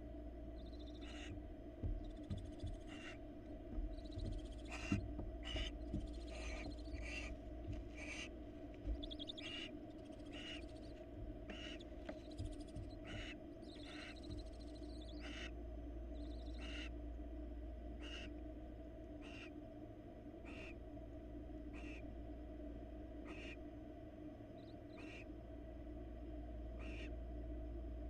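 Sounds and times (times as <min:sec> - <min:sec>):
steady low hum: 0:00.0 - 0:28.0
owls hissing and screeching: 0:04.6 - 0:07.3, 0:07.9 - 0:08.3, 0:09.0 - 0:10.9, 0:13.0 - 0:14.2.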